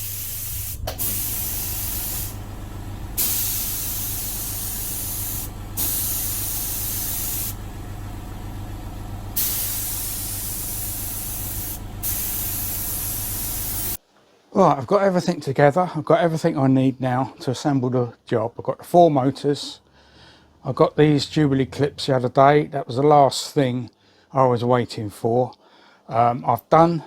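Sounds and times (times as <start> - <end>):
compressed air hissing: 0.0 - 7.7, 8.4 - 14.0
air compressor motor humming: 0.0 - 14.0.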